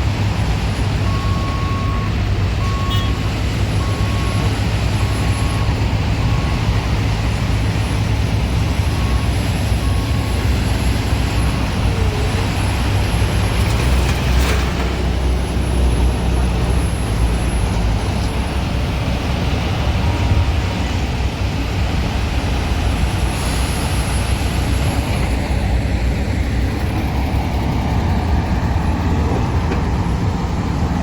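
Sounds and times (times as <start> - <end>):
diesel engine running: 0.0 - 31.0
reversing alarm beeps: 1.0 - 7.1, 8.5 - 14.9.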